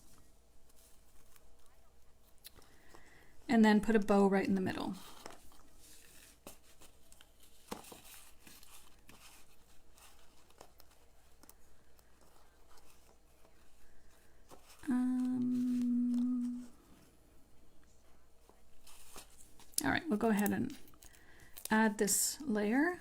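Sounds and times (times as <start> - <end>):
paper and ribbon rustling: 0.0 - 3.3, 4.1 - 17.2, 17.8 - 23.0
person humming: 14.8 - 17.0.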